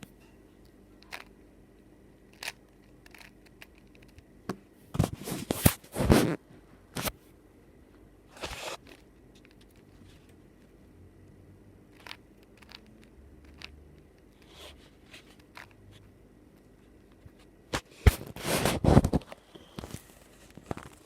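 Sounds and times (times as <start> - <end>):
puzzle cube scraping turns: 2.3 - 4.2, 8.3 - 10.3, 11.9 - 16.0, 18.0 - 20.0
puzzle cube clicking turns: 2.3 - 4.3, 11.9 - 15.8.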